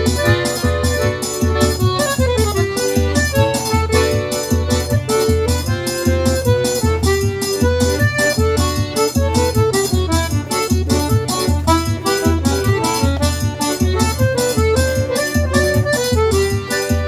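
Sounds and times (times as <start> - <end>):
accordion melody: 0.0 - 17.0
quick steady beat with bass: 0.0 - 17.0.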